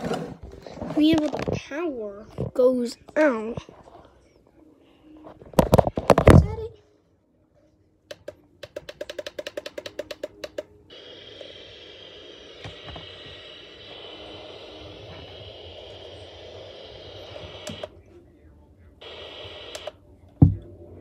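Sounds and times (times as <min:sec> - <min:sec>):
radio static hiss: 0:10.9 - 0:18.1, 0:19.0 - 0:20.0.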